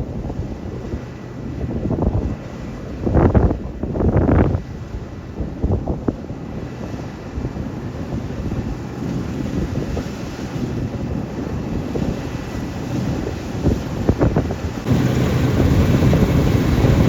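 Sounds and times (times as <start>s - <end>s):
wind buffeting microphone: 0.0s - 17.0s
combine harvester running: 14.8s - 17.0s.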